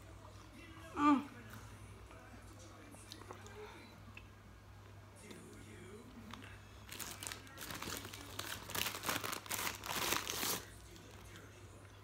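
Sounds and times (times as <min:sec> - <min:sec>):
food packaging crinkling: 0:06.3 - 0:11.5.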